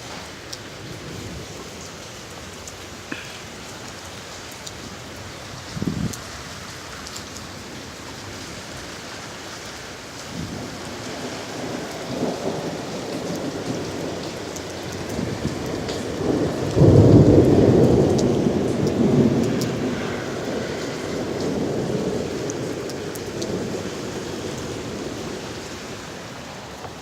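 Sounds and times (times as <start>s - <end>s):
steady rain: 0.0s - 27.0s
thunder rumbling: 10.3s - 27.0s.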